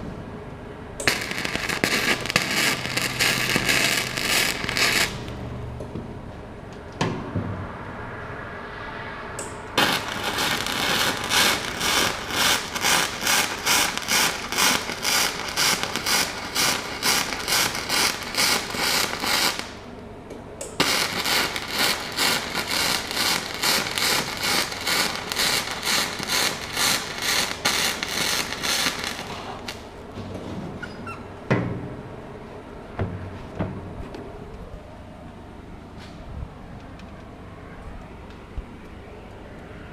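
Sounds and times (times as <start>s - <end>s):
welding arc crackling: 1.0s - 5.5s, 9.4s - 19.9s, 20.6s - 30.0s.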